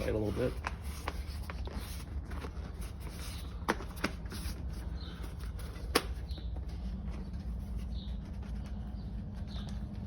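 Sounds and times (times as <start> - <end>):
rubber tire rubbing on rim: 0.0 - 5.1.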